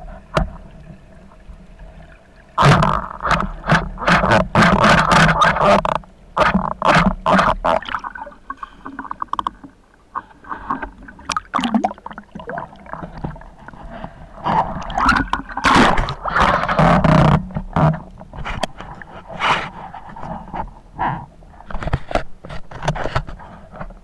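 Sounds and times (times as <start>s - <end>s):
water splashing and bubbling: 0.0s - 18.1s.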